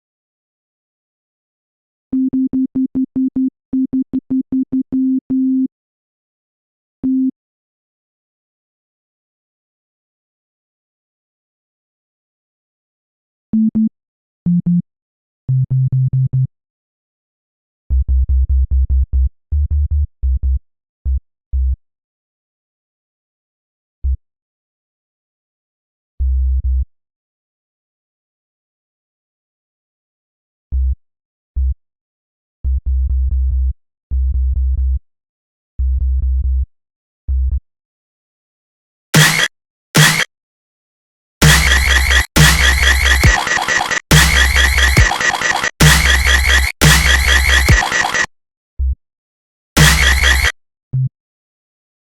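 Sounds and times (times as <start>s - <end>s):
loud noisy hit: 39.2s - 40.2s, 41.4s - 43.4s, 44.1s - 45.2s, 45.8s - 47.9s
synthesizer bass notes: 39.2s - 40.3s, 41.4s - 48.3s, 49.8s - 50.5s.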